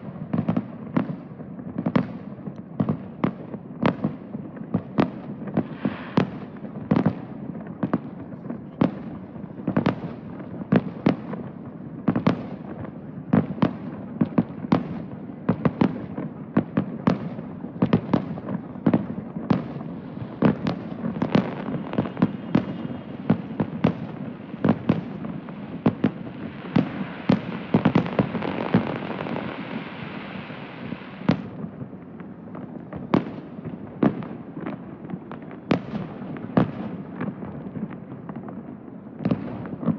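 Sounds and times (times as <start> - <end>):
hissing firework crackle: 5.0 - 34.6.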